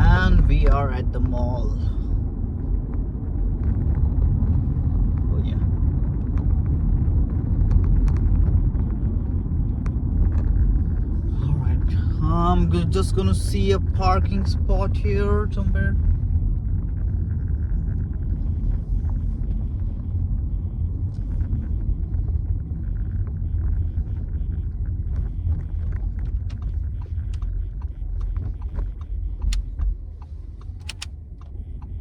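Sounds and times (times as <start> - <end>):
car driving slowly: 0.0 - 32.0
light clicks: 26.4 - 31.9.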